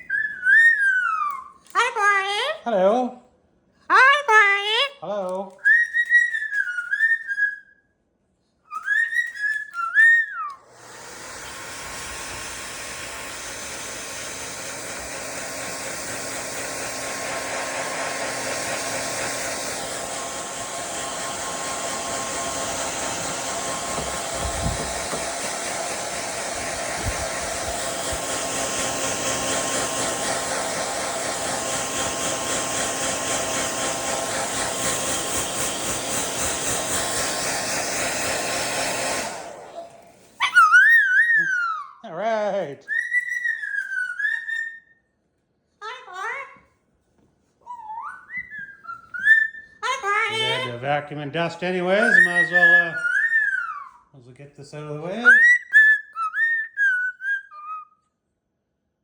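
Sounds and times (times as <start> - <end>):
blow dryer running: 10.6 - 41.4, 49.8 - 53.6.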